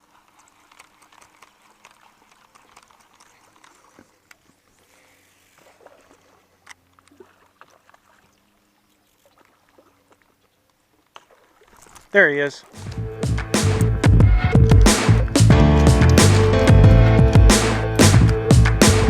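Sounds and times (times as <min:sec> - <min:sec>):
small ticks and knocks: 0:00.0 - 0:04.6
water trickling and lapping: 0:00.0 - 0:13.5.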